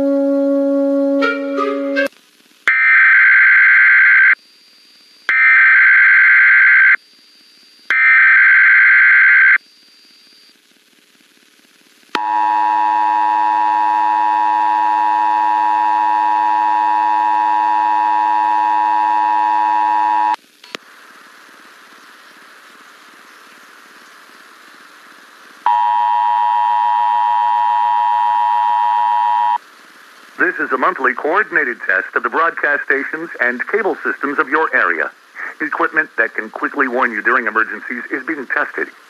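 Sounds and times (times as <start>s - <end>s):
two-tone attention signal: 12.2s - 20.4s, 25.7s - 29.6s.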